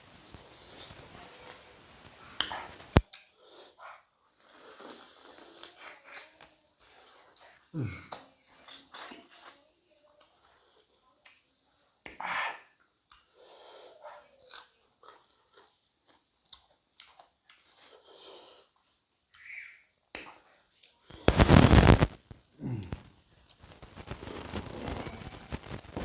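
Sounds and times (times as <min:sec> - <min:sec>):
person chewing and lip smacking: 0:08.1 - 0:11.4, 0:14.4 - 0:19.5.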